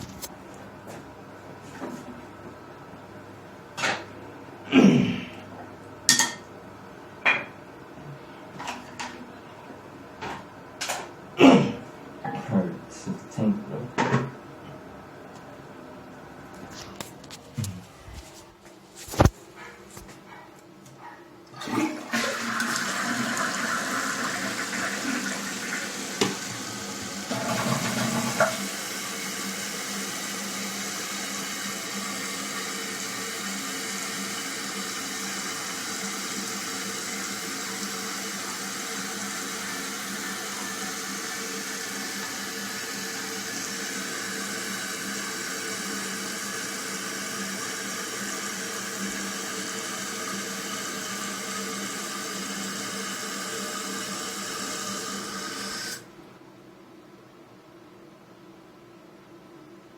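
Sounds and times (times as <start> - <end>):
toilet flushing: 21.5 - 56.1
toilet tank refilling hiss: 21.6 - 56.1.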